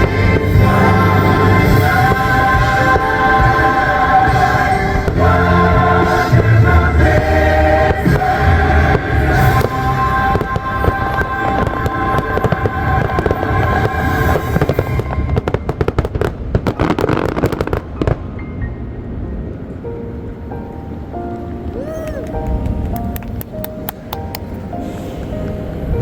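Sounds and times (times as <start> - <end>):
firework bangs and crackles: 0.0 - 18.3.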